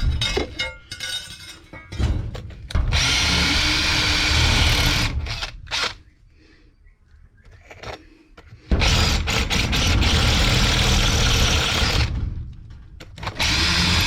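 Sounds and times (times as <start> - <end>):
power drill drilling into concrete: 2.9 - 6.0, 8.8 - 12.1, 13.2 - 14.0.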